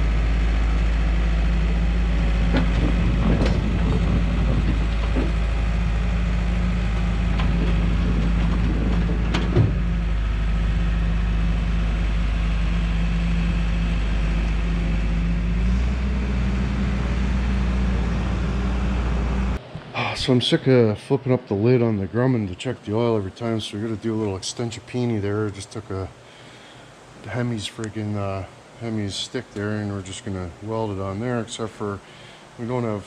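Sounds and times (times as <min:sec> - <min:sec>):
vehicle engine running: 0:00.0 - 0:19.6.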